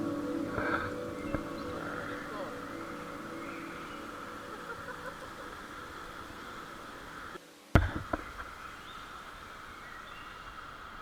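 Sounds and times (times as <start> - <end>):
high-pitched outdoor drone: 0.0 - 7.4
sharp knocks: 7.8 - 8.6.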